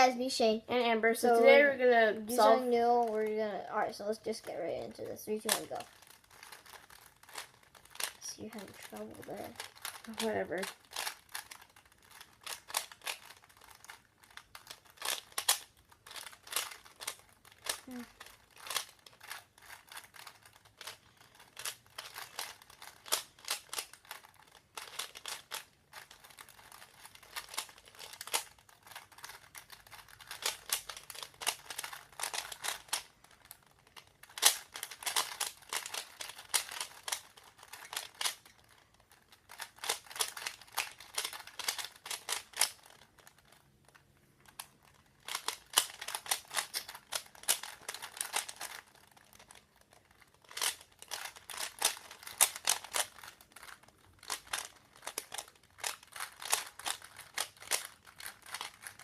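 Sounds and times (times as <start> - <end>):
puzzle cube clicking as turned: 5.5 - 59.0.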